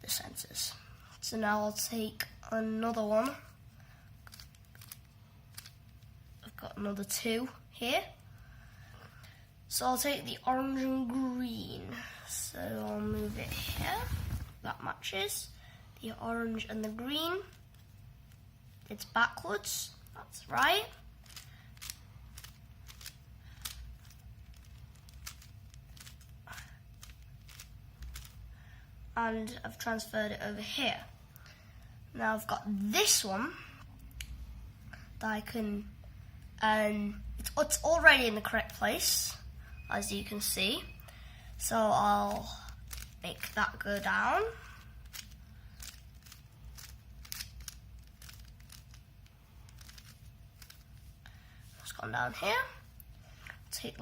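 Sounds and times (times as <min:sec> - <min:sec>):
puzzle cube plastic clicks: 0:04.2 - 0:05.8, 0:21.2 - 0:26.3, 0:26.9 - 0:28.4, 0:42.3 - 0:44.1, 0:45.0 - 0:50.9.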